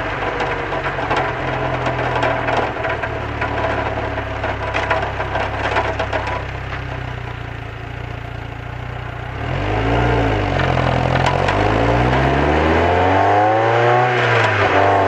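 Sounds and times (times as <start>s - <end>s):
rattling clatter: 0.0s - 15.0s
sports car engine revving: 8.1s - 15.0s.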